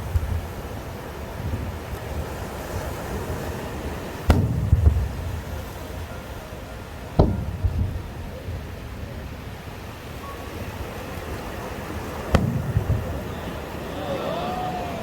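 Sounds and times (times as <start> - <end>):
steady background hiss: 0.0 - 15.0
fireworks shells bursting: 3.5 - 6.0, 11.2 - 14.9.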